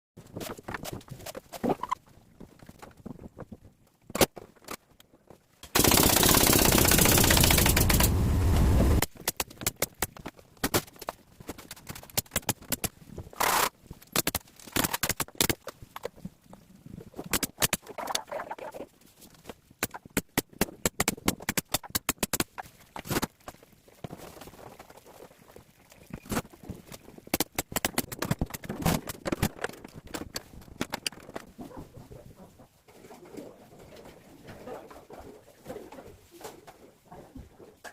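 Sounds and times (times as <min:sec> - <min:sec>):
sharp irregular clicks and knocks: 0:04.1 - 0:16.2, 0:19.8 - 0:23.3, 0:26.2 - 0:31.5
power tool running: 0:06.4 - 0:09.0.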